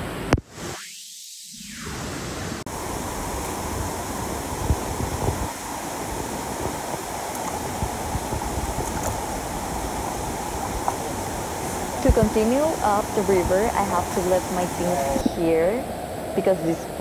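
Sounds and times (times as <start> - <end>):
river water rushing: 2.7 - 17.0.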